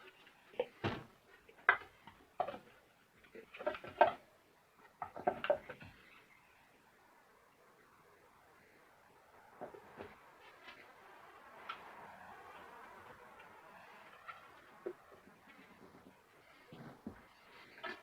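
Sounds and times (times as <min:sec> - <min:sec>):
plastic parts knocking and clicking: 0:05.0 - 0:06.0.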